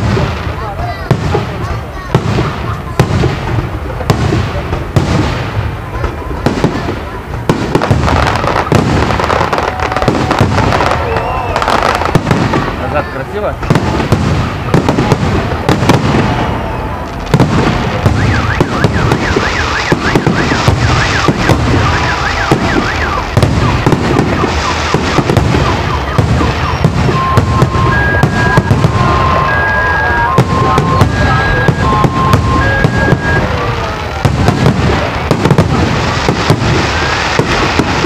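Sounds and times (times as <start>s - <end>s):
fireworks bangs and crackles: 0.0s - 38.0s
alarm two-tone beeps: 18.1s - 33.5s
electronic alarm warbling wail: 18.2s - 33.7s.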